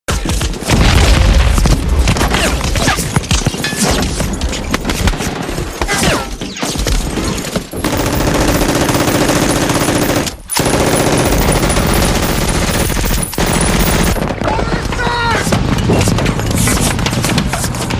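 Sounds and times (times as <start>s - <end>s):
rifle and machine-gun fire: 6.9s - 17.9s.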